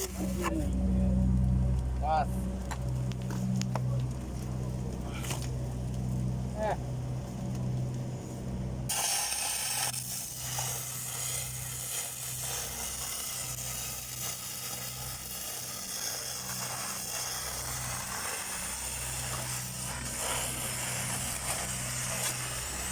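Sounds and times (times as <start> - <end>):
welding arc crackling: 0.0 - 22.9
welding machine engine hum: 0.0 - 22.9.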